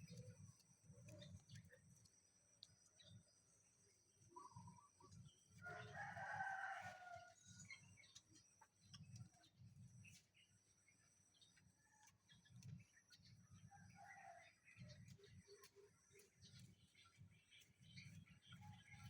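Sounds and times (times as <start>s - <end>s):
rooster crowing: 5.6s - 7.6s.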